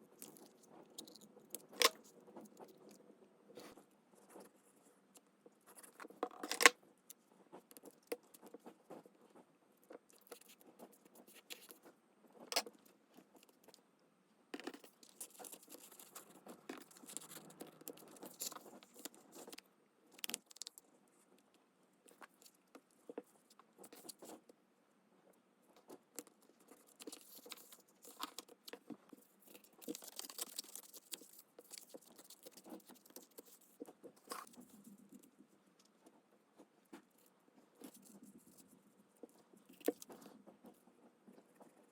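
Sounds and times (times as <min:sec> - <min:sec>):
paper rustling and scratching: 0:07.4 - 0:13.8, 0:14.6 - 0:19.6, 0:22.1 - 0:24.5, 0:25.8 - 0:41.9.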